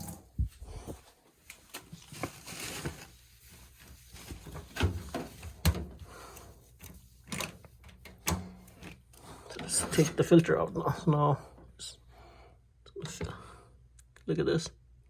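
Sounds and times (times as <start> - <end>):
handling knocks and clicks: 4.4 - 6.0.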